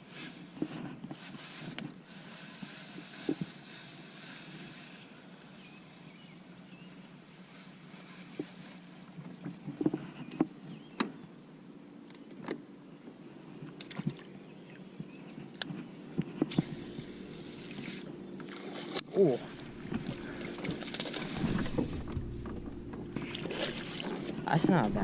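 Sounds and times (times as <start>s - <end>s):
steady low hum: 0.0s - 25.0s
gear knocking against boat: 19.6s - 25.0s.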